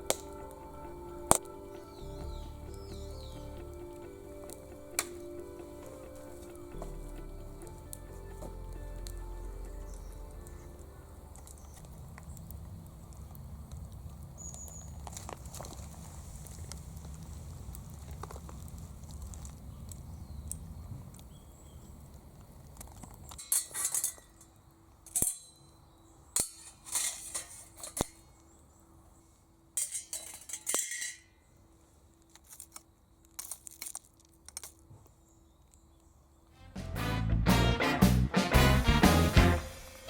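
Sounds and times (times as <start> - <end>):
wood fire crackling and popping: 0.0 - 24.3
low rumble: 6.2 - 12.8.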